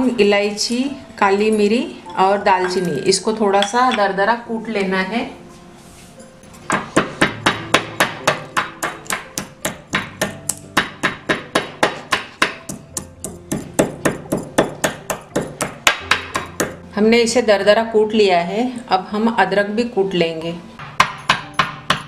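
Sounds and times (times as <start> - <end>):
pestle pounding spices in mortar: 6.6 - 16.8, 20.8 - 22.0.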